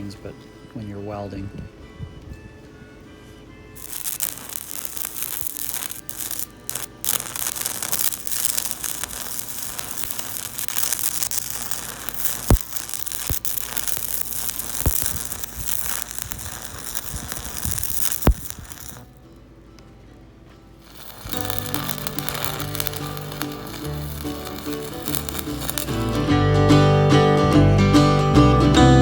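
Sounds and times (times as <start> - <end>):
welding arc crackling: 3.8 - 19.2, 20.8 - 26.4.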